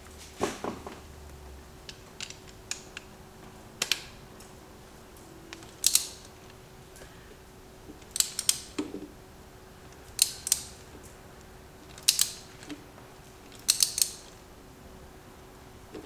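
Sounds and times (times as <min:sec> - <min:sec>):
ratchet wrench clicking: 0:05.7 - 0:06.3, 0:08.1 - 0:08.8, 0:10.1 - 0:10.8, 0:12.0 - 0:12.5, 0:13.6 - 0:14.3.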